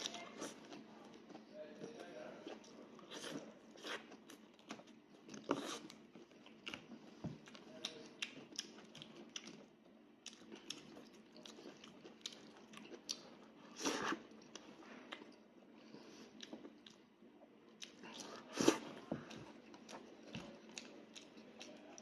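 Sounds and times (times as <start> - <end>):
person chewing and biting: 2.5 - 15.4.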